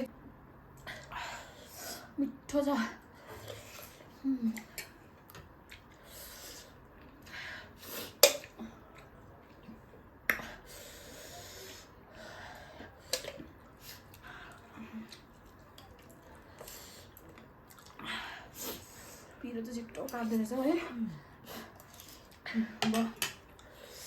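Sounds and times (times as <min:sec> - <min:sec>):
sniffs and breaths: 0:06.0 - 0:09.1, 0:10.4 - 0:15.2, 0:16.3 - 0:17.3, 0:18.0 - 0:19.4
person eating: 0:13.0 - 0:19.1, 0:21.5 - 0:24.0.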